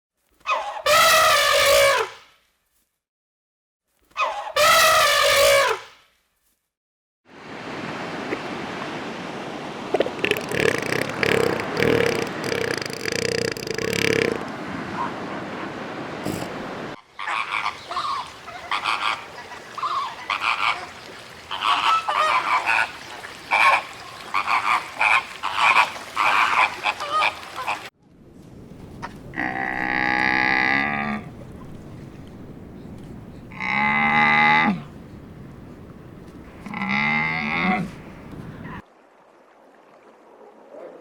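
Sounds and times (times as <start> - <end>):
short rapid animal calls: 10.1 - 14.5
long drawn-out animal calls: 10.2 - 14.5.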